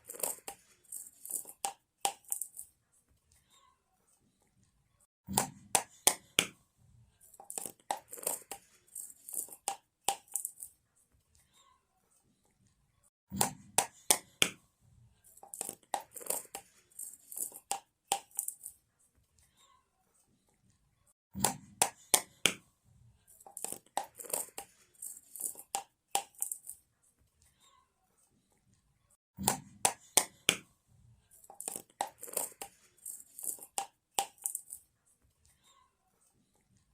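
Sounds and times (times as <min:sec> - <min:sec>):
container rattle shaken: 0:00.0 - 0:02.7, 0:07.3 - 0:10.7, 0:15.3 - 0:18.8, 0:23.3 - 0:26.8, 0:31.4 - 0:34.8.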